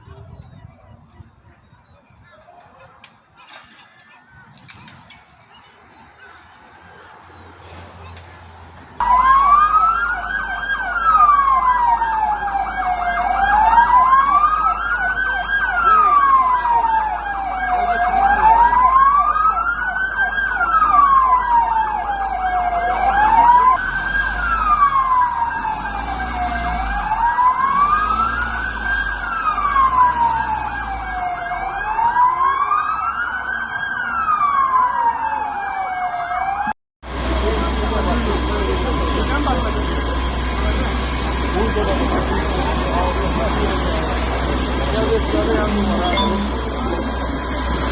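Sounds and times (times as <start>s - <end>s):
siren wailing: 9.0s - 36.8s, 38.0s - 47.2s
warbling siren: 9.0s - 36.8s, 37.4s - 47.7s.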